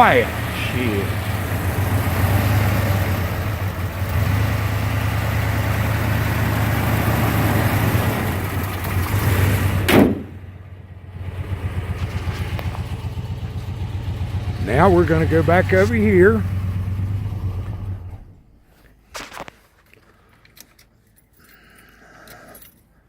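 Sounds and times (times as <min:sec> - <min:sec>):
car engine idling: 0:00.0 - 0:18.6
loud thump: 0:09.8 - 0:10.4.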